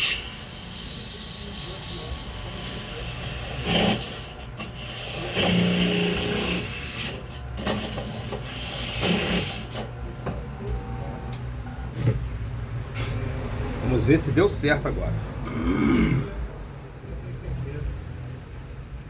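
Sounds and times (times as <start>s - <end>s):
drill bit scraping metal: 0.0s - 11.4s.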